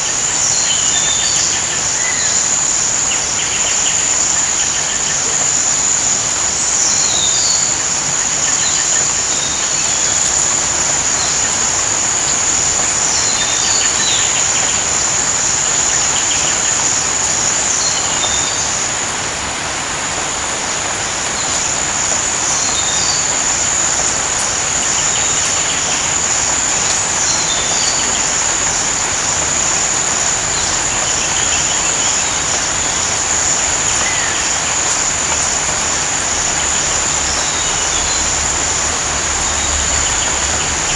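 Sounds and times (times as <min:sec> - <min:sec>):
high-pitched insect trill: 0:00.0 - 0:18.7, 0:22.4 - 0:40.9
steady rain hiss: 0:00.0 - 0:40.9.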